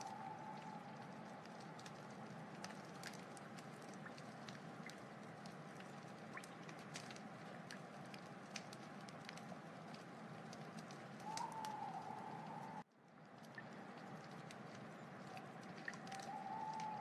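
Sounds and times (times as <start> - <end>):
thin whistling tone: 0.0 - 1.0, 11.2 - 12.8, 16.0 - 17.0
fire crackles and pops: 0.0 - 17.0
wood fire rushing: 0.2 - 12.8.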